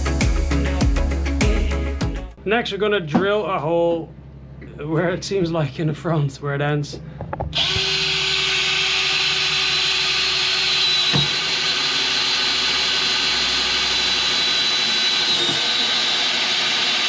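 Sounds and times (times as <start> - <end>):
electric drill boring: 7.6 - 17.0.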